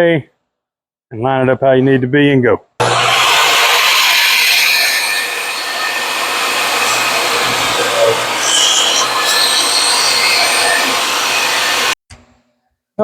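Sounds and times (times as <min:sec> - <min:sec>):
table saw cutting wood: 0:02.8 - 0:12.0.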